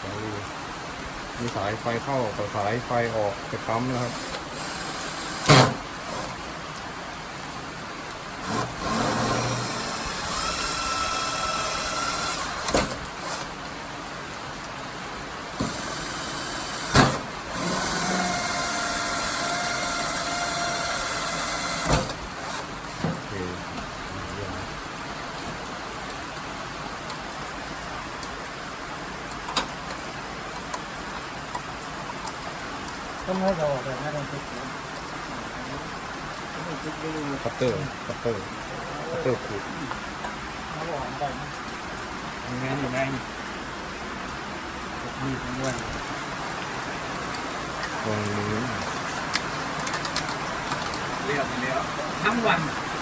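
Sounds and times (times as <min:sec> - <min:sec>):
background hiss: 0:00.0 - 0:53.0
heavy rain falling: 0:00.0 - 0:53.0
small motor whining: 0:04.0 - 0:06.4, 0:08.4 - 0:13.5, 0:15.6 - 0:22.7.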